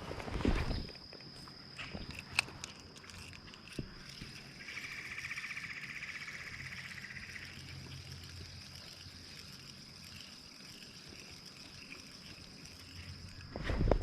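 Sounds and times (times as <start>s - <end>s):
frog pulsed trill: 4.0s - 13.5s.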